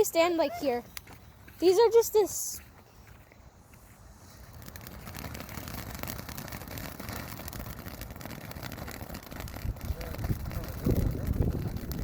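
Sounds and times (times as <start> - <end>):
ground firework hissing and crackling: 0.0 - 12.0.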